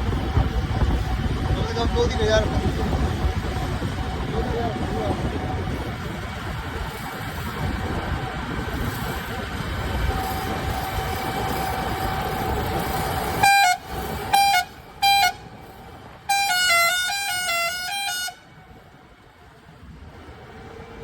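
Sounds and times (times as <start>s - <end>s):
vehicle running noise: 0.0s - 21.0s
musical vehicle horn: 13.3s - 15.6s, 16.2s - 18.6s.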